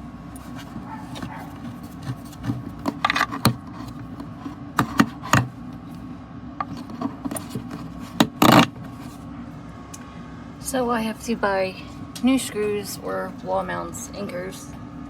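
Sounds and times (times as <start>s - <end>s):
handling knocks and scrapes: 0.3s - 5.6s, 6.6s - 9.3s.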